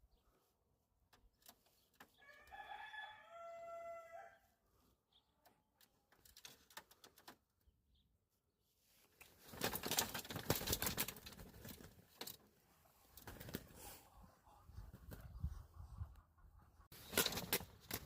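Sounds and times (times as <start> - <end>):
poultry flapping wings: 9.4 - 12.4, 13.2 - 13.9, 16.9 - 18.0.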